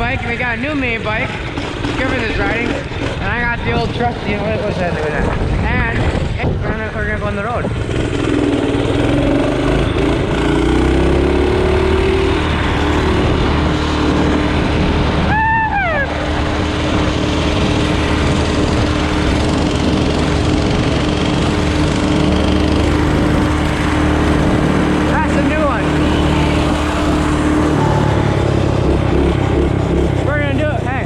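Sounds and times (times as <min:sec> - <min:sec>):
small gasoline engine running: 0:00.0 - 0:05.6, 0:07.6 - 0:15.3, 0:16.0 - 0:31.0
person yelling: 0:15.2 - 0:16.3.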